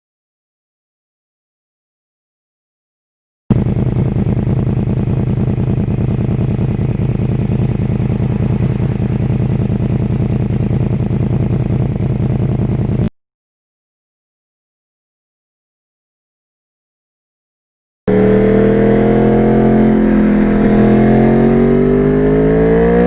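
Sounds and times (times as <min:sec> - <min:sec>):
motorcycle engine throbbing: 0:03.5 - 0:13.1, 0:18.1 - 0:23.0.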